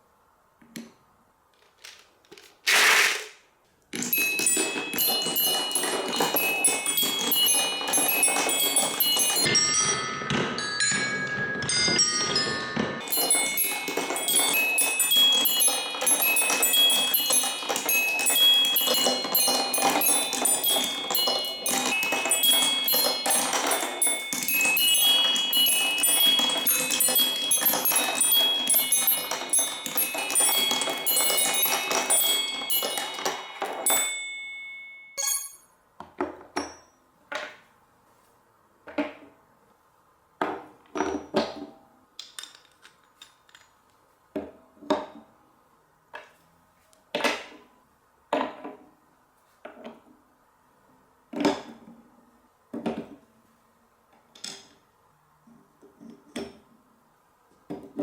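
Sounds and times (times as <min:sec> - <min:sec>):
marbles clacking on blocks: 0:04.0 - 0:09.5, 0:13.0 - 0:34.0, 0:42.2 - 0:43.7
marbles tinkling and chiming: 0:04.0 - 0:35.7.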